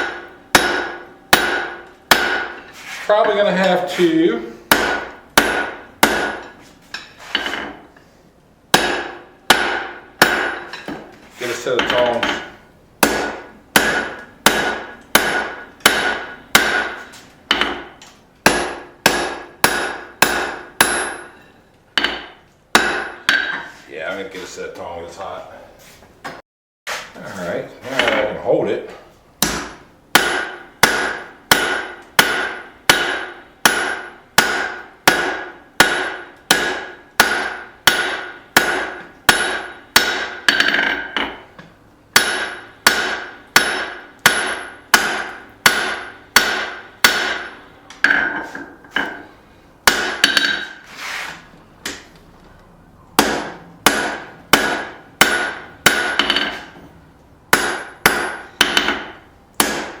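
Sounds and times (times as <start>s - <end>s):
hammer striking steel on anvil: 0.0s - 3.4s, 4.7s - 7.9s, 8.7s - 11.1s, 11.8s - 23.7s, 29.4s - 41.5s, 42.2s - 50.9s, 53.2s - 56.8s, 57.5s - 60.0s.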